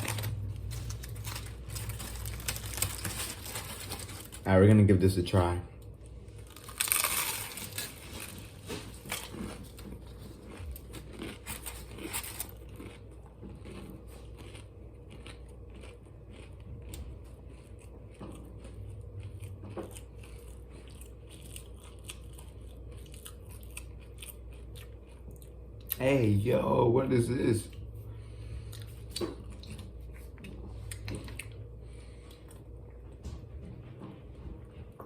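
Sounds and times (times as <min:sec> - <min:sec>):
crunching chips: 0:00.0 - 0:04.8, 0:06.3 - 0:26.0
chewing: 0:06.4 - 0:26.0, 0:27.7 - 0:33.0.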